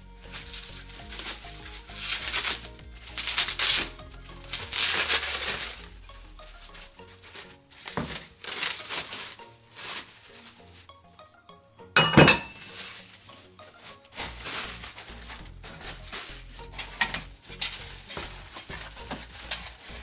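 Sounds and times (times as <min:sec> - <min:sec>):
soft background music: 0:00.0 - 0:20.0
packaging rustling and crinkling: 0:00.2 - 0:10.8, 0:12.6 - 0:20.0.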